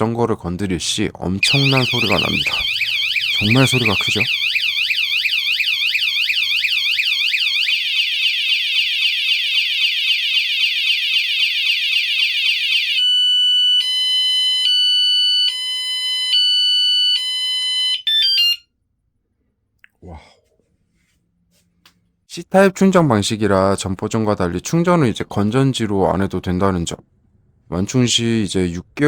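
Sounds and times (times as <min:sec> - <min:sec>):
alternating electronic alarm tones: 0:01.4 - 0:18.6
bicycle alarm warbling: 0:01.4 - 0:18.6.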